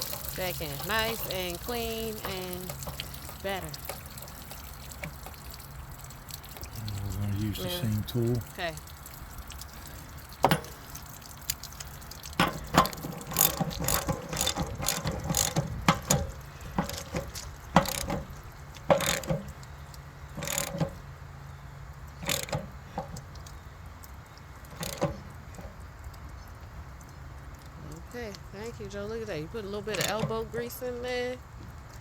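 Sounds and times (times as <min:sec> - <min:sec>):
metal knocks: 0:00.0 - 0:04.4, 0:10.4 - 0:10.9, 0:12.3 - 0:19.6
ratchet wrench clicking: 0:12.8 - 0:18.2, 0:18.8 - 0:19.5, 0:20.4 - 0:21.0, 0:22.2 - 0:22.6, 0:24.7 - 0:25.2.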